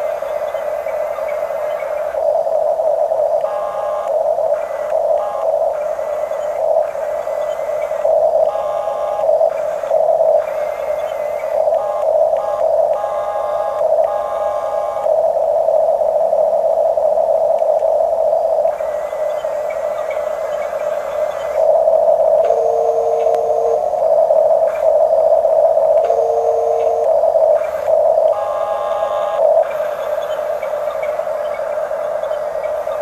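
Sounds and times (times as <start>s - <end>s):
electric motors whining: 0.0s - 33.0s
higher-pitched motor whines: 18.6s - 33.0s.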